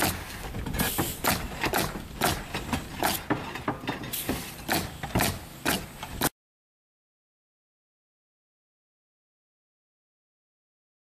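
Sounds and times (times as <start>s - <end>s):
nails driven into roof: 0.0s - 6.3s.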